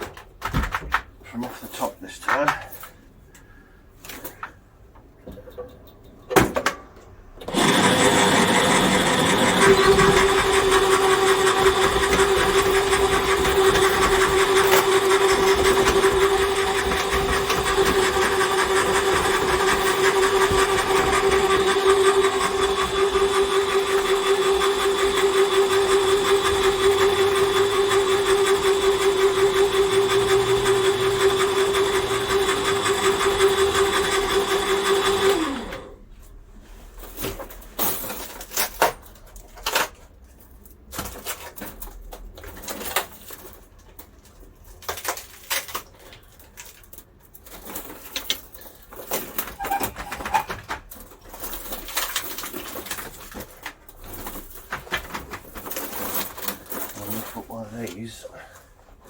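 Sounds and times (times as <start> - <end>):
cable stripping machine motor whine: 7.4 - 36.0.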